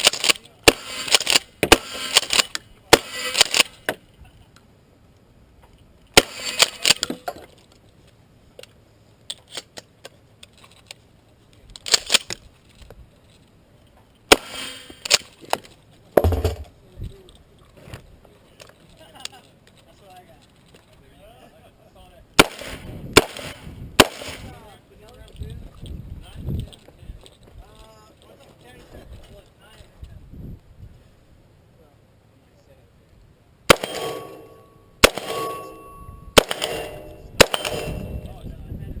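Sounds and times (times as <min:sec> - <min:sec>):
gun handling clicks: 0:00.0 - 0:02.6, 0:08.6 - 0:13.4, 0:14.8 - 0:15.8
gunshots: 0:00.0 - 0:03.9, 0:06.2 - 0:07.1, 0:14.3 - 0:15.2, 0:22.4 - 0:24.6, 0:33.7 - 0:38.2.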